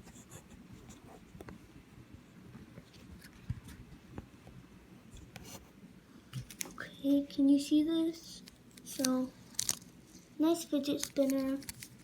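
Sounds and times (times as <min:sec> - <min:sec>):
faint handling clicks and rustles: 0:08.4 - 0:12.0.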